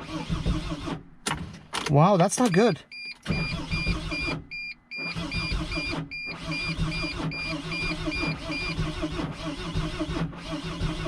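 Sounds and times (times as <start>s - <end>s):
engine cranking on starter: 0.0s - 11.0s
dashboard warning chime beeping: 2.4s - 8.8s.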